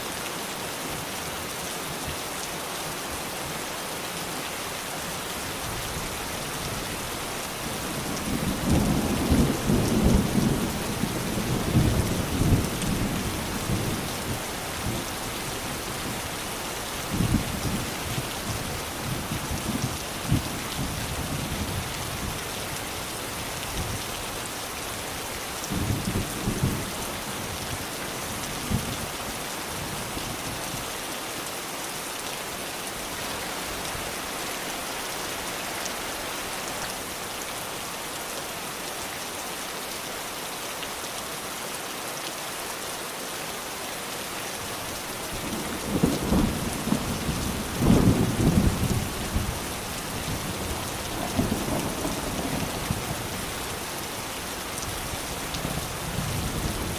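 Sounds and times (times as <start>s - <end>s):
steady rain hissing: 0.0s - 56.9s.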